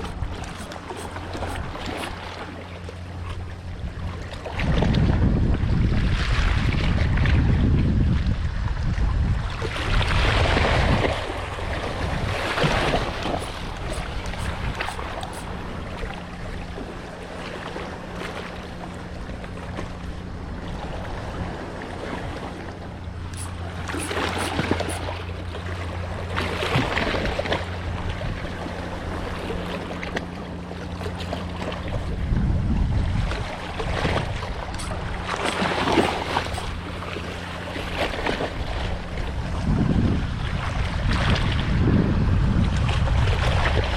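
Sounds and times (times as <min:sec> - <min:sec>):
water splashing: 0:00.0 - 0:03.5, 0:12.4 - 0:18.8, 0:23.2 - 0:27.9, 0:34.0 - 0:39.0
low engine hum: 0:00.0 - 0:43.9
wind buffeting microphone: 0:03.3 - 0:16.9, 0:31.9 - 0:37.0, 0:37.8 - 0:43.9.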